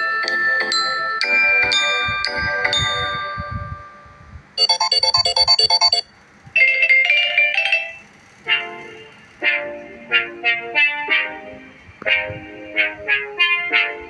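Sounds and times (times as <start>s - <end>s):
chiming ringtone melody: 0.0s - 11.2s
ringtone with sharp fading notes: 0.0s - 11.8s
short repeated electronic notes: 4.6s - 6.1s.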